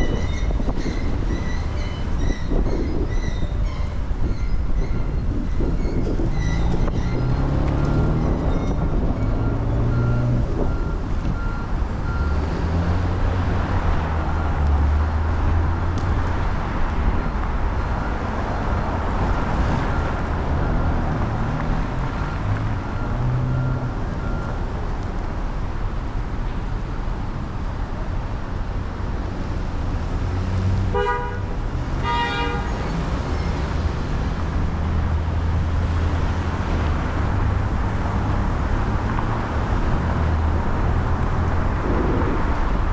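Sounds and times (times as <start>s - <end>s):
traffic and tyres on wet road: 0.0s - 42.9s
car horn honks: 30.9s - 32.9s.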